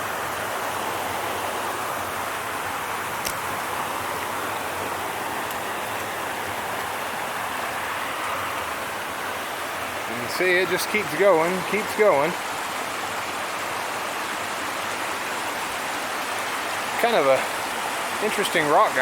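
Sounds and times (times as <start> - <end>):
creek water rushing down falls: 0.0 - 19.0.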